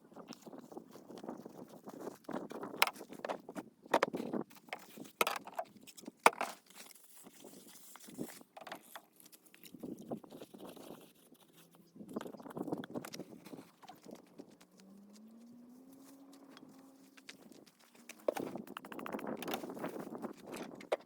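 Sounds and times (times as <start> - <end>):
rustling: 4.4 - 21.0
knocks and clicks: 17.4 - 19.8.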